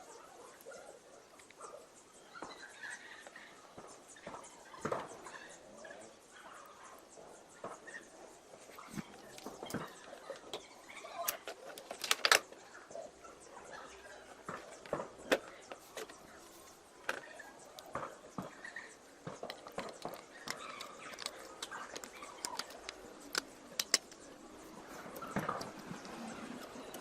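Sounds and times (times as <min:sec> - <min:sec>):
small hard parts clicking: 0:08.8 - 0:12.7, 0:14.4 - 0:27.0.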